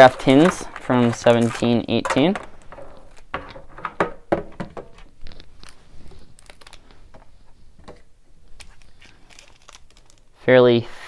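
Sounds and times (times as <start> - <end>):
foil pack crinkling: 0.0 - 4.0, 4.9 - 7.6, 8.4 - 10.4.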